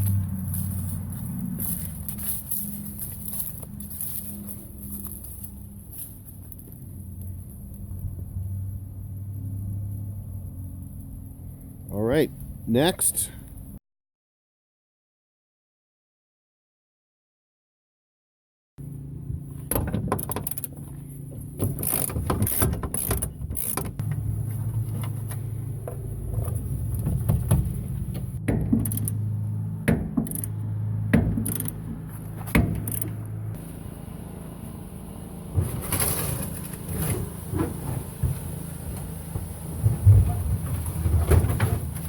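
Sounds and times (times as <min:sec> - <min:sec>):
ratchet clicking: 0:28.8 - 0:29.2, 0:30.2 - 0:30.6, 0:31.4 - 0:31.8, 0:32.7 - 0:33.2.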